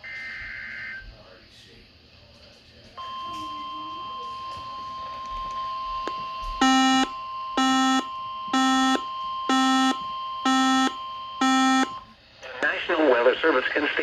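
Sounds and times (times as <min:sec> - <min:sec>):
steady alarm tone: 0:03.0 - 0:12.2
buzzy electronic beep: 0:06.6 - 0:12.0.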